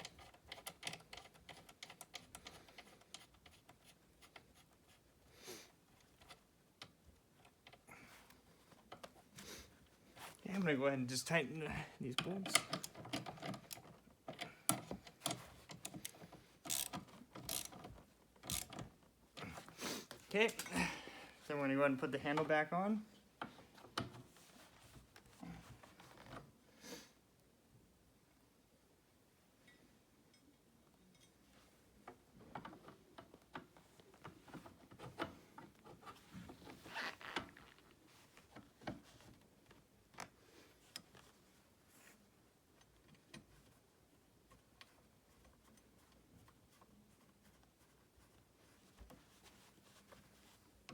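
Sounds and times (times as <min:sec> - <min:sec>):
handle clicking onto metal rod: 0:12.2 - 0:16.1
hand tool clicking: 0:16.7 - 0:18.8.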